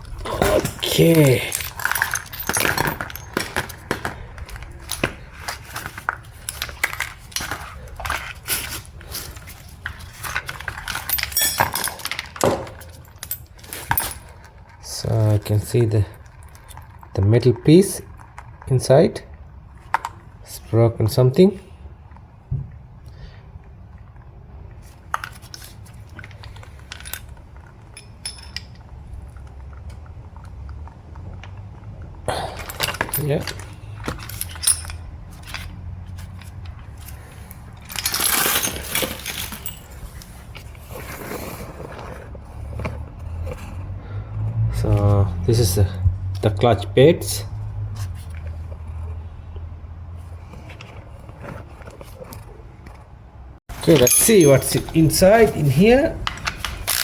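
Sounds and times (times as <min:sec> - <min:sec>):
metal tools clinking and scraping: 0:00.0 - 0:17.2, 0:25.2 - 0:29.7, 0:32.3 - 0:43.7, 0:53.7 - 0:57.0.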